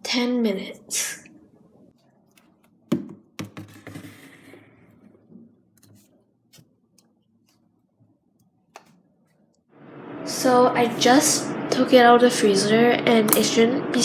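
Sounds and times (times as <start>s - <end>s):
plastic container knocks and clicks: 2.9s - 4.0s.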